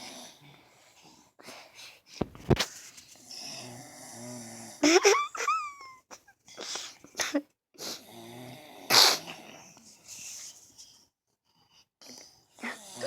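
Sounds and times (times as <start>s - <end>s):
low buzzing snores: 3.2s - 4.8s, 7.9s - 9.8s, 12.0s - 13.0s.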